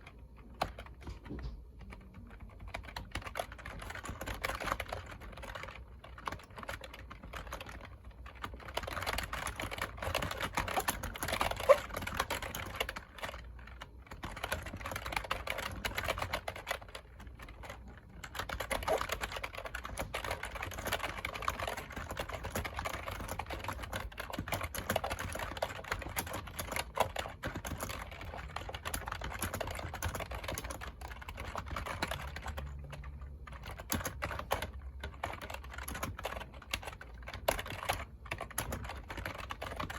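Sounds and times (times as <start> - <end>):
fast keyboard typing: 0.0 - 39.9.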